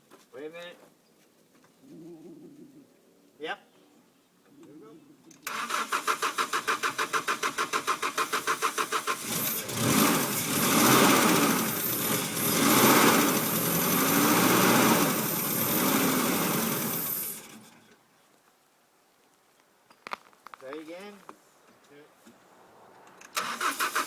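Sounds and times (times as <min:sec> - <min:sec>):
engine cranking on starter: 0:05.4 - 0:18.0, 0:23.2 - 0:24.0
engine running roughly: 0:05.9 - 0:17.8.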